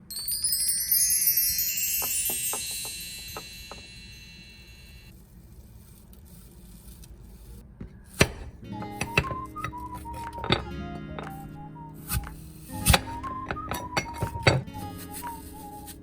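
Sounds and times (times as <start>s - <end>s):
wind chimes ringing: 0.0s - 5.1s, 12.8s - 15.4s.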